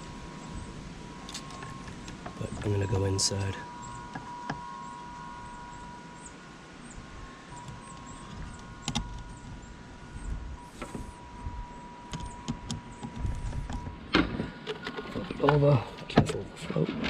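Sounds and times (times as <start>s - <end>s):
faint high whine: 0.0s - 17.0s
parts clicking and knocking: 7.6s - 9.3s.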